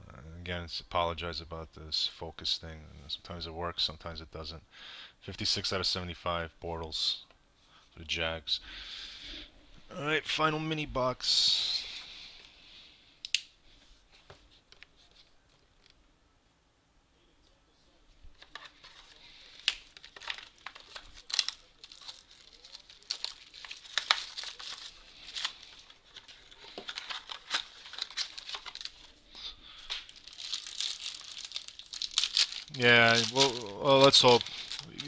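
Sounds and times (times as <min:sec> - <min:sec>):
wrapping crinkling and tearing: 0:18.4 - 0:35.0.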